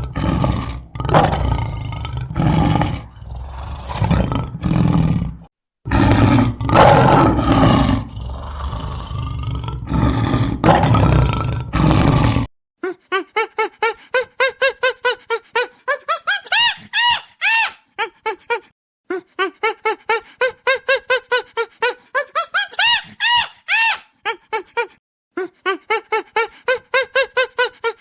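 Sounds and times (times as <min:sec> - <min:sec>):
animal cries rising and falling: 0:16.5 - 0:17.8.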